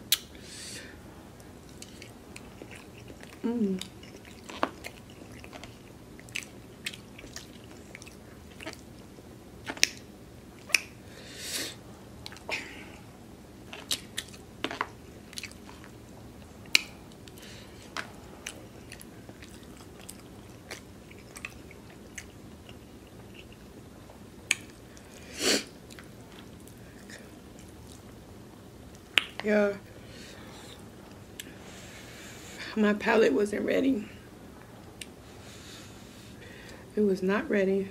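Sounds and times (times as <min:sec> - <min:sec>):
mouth clicks and smacks: 0:00.1 - 0:00.4, 0:09.6 - 0:11.0, 0:13.7 - 0:15.9, 0:16.6 - 0:21.8, 0:24.4 - 0:24.8, 0:28.9 - 0:29.5
wet chewing: 0:01.4 - 0:11.0, 0:13.7 - 0:28.2.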